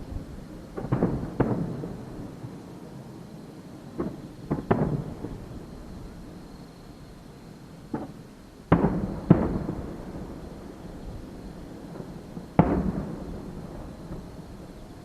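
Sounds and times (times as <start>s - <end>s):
fireworks bangs with rumble: 0.7s - 2.4s, 4.0s - 5.7s, 7.9s - 11.0s, 11.8s - 15.0s.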